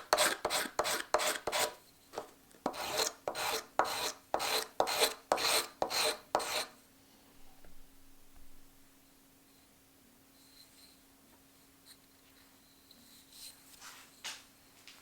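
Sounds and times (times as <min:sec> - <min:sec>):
hand file scraping: 0:00.0 - 0:06.8.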